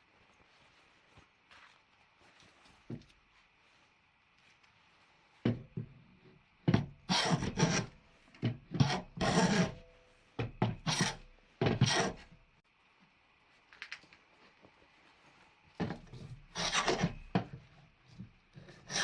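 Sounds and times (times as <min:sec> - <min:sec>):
hand tool strokes: 0:07.0 - 0:08.1, 0:08.7 - 0:12.4, 0:15.9 - 0:17.6, 0:18.6 - 0:19.0.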